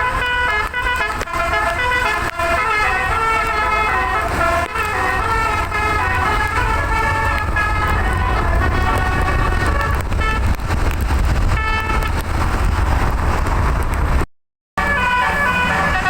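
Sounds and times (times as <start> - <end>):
musical air horn tune: 0.0 - 10.6, 11.5 - 12.2, 14.8 - 16.0
low rumble of road noise: 0.0 - 16.0.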